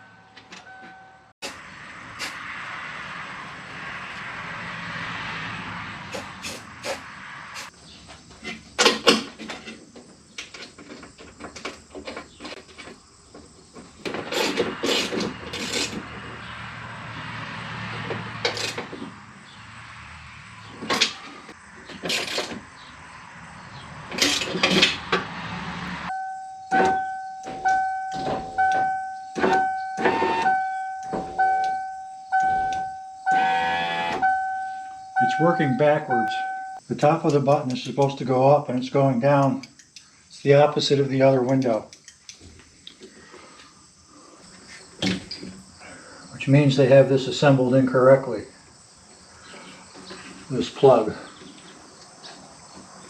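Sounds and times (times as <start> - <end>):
clicks and clatter of hand work: 8.4 - 16.1
pulsing electronic warning tone: 26.1 - 36.8.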